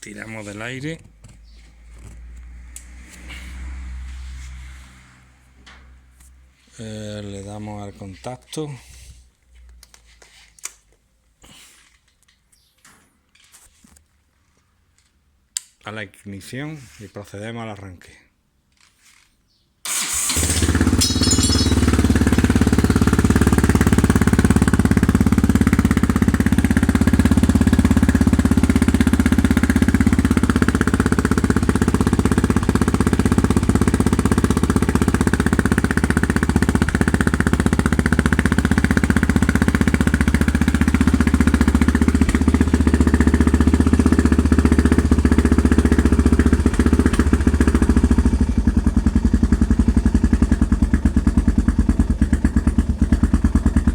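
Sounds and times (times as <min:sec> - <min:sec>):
motorcycle engine idling: 0:20.0 - 0:53.9.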